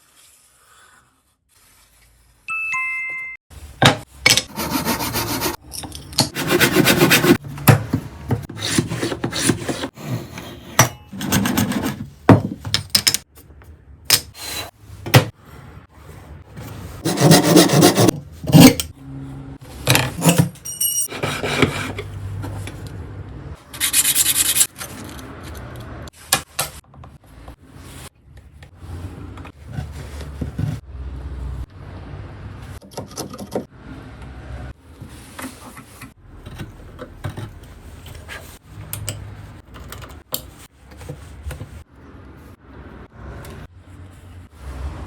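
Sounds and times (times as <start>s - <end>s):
hand tool scraping: 4.5s - 5.6s, 6.3s - 7.4s, 8.4s - 12.0s, 17.0s - 18.9s
tools clicking and scraping: 8.4s - 12.1s
thin high ring: 20.6s - 21.1s.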